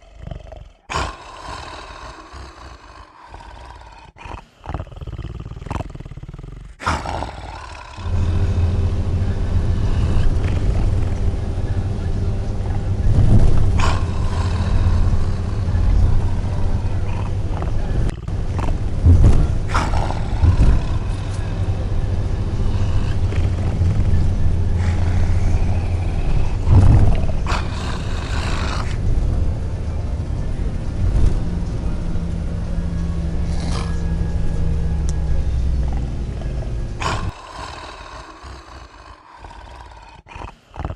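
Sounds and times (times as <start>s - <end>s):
men snoring: 0.0s - 29.1s, 33.3s - 40.9s.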